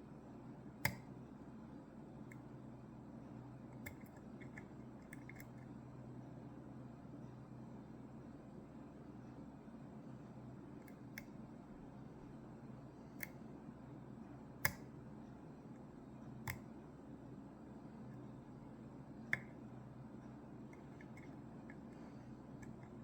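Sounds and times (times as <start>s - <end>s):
steady low hum: 0.0s - 23.0s
lock picking metallic clicks: 3.8s - 5.6s.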